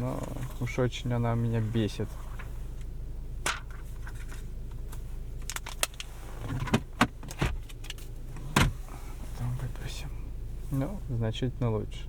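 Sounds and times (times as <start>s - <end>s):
low car hum: 0.0s - 12.0s.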